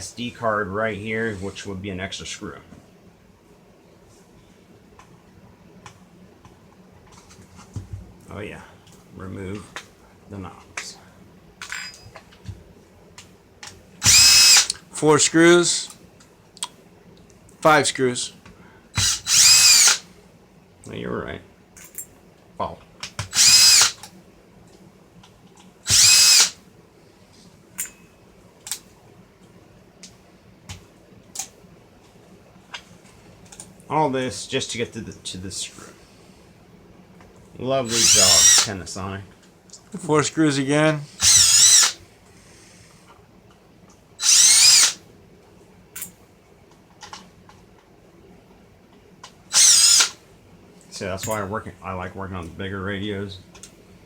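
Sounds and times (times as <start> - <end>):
power screwdriver motor whine: 14.0 - 14.8, 19.0 - 20.0, 23.2 - 24.0, 25.9 - 26.6, 37.9 - 38.7, 41.2 - 42.0, 44.2 - 45.0, 49.5 - 50.2.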